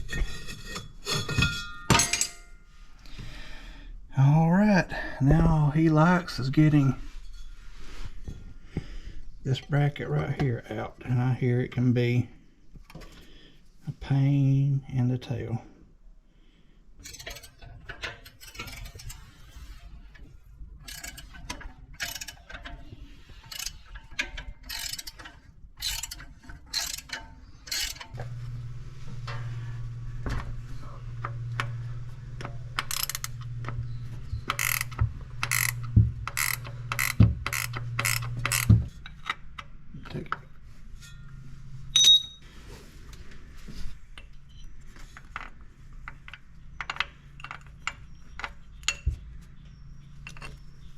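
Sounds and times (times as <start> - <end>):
steady low hum: 18.6 - 44.8
ratchet wrench clicking: 20.9 - 22.6, 23.4 - 28.1, 32.8 - 33.4, 34.5 - 39.7.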